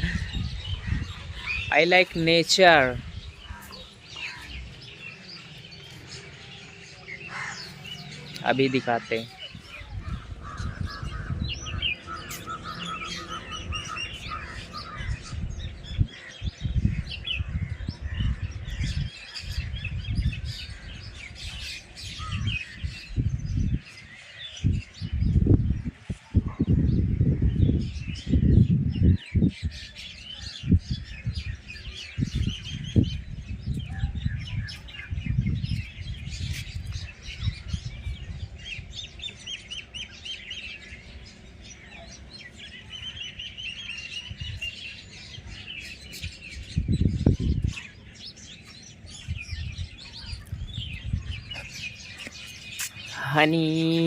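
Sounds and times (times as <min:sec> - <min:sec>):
small birds chirping: 0:00.0 - 0:54.0.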